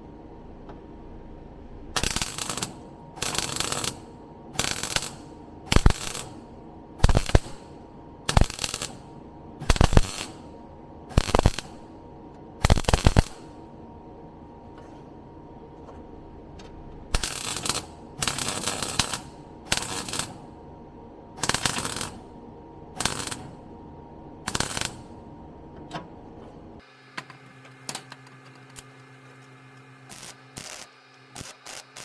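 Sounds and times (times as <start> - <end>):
welder crackling: 2.0 - 6.4, 7.0 - 7.7, 8.3 - 10.4, 11.1 - 11.8, 12.6 - 13.5, 17.1 - 20.4, 21.4 - 22.2, 23.0 - 23.5, 24.5 - 25.0, 29.8 - 32.0
welder hum: 2.0 - 12.0, 12.6 - 13.7, 17.1 - 20.5, 21.4 - 22.3, 23.0 - 23.6, 24.4 - 25.1, 26.8 - 32.0.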